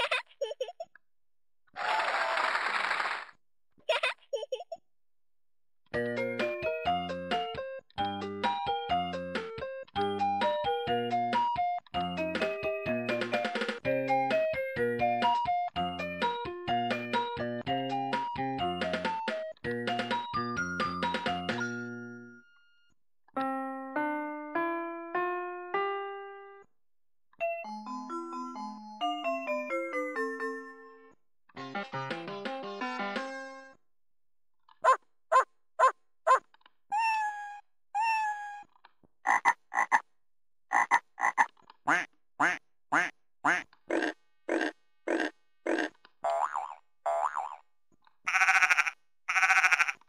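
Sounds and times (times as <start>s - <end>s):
electronic keyboard melody: 6.0s - 22.7s, 23.3s - 26.7s
recorded frog croaks from toy: 39.2s - 40.0s, 40.7s - 47.6s, 48.2s - 50.0s.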